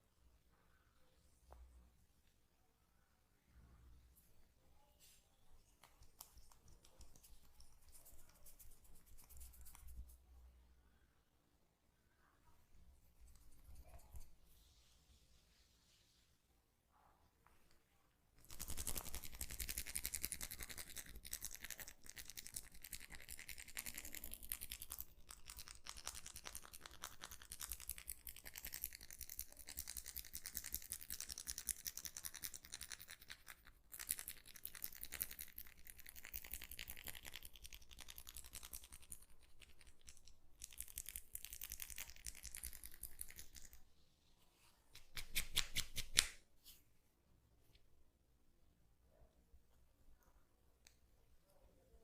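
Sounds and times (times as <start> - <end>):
hands scratching and rubbing: 5.0 - 10.2, 13.0 - 16.3, 18.4 - 46.9.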